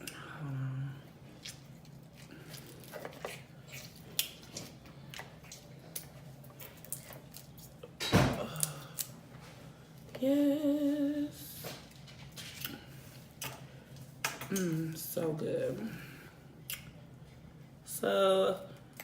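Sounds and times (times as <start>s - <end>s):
wet eating and chewing: 1.0s - 9.2s
woman humming: 10.2s - 11.6s, 14.5s - 16.1s.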